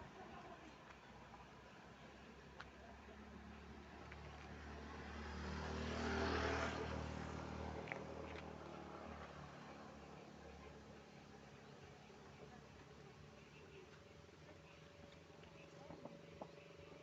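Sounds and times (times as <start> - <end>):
vehicle passing by: 3.1 - 12.5.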